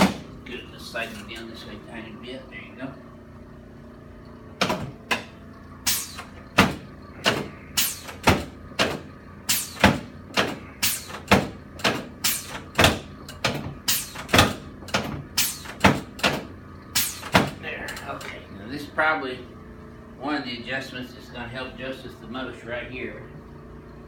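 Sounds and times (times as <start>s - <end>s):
sharp knocks: 0.0s - 0.3s, 4.6s - 17.6s.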